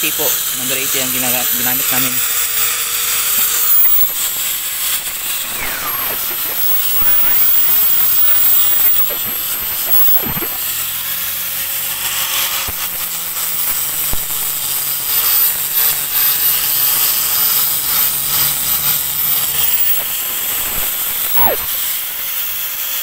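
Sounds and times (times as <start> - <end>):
angle grinder sanding wood: 0.0 - 11.1, 12.1 - 22.5.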